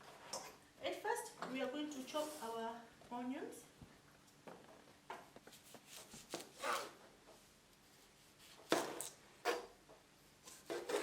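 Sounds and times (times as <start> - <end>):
knife cutting onion on board: 10.5 - 11.0.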